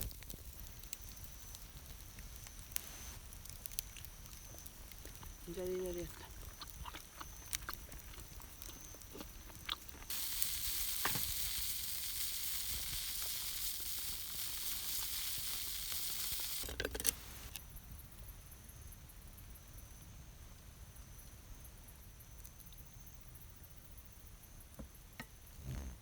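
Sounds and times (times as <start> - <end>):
food sizzling in a skillet: 0.0 - 3.8, 10.1 - 17.6.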